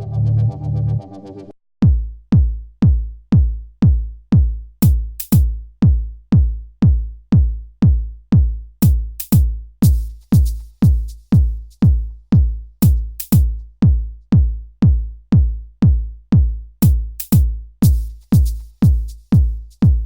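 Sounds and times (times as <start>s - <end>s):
synthesizer chords: 0.0s - 1.5s
deep kick drums: 1.8s - 20.0s.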